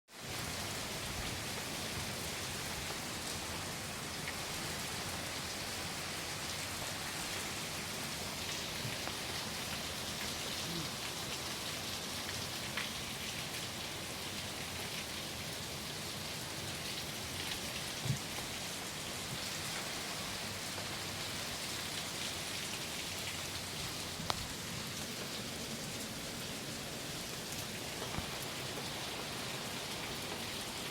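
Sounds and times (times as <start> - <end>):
steady rain falling: 0.1 - 30.9
sharp raindrop taps: 28.0 - 28.6.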